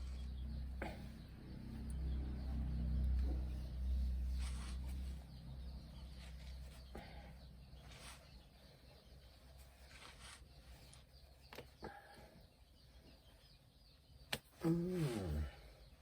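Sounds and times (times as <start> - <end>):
low rumble: 0.0 - 7.8.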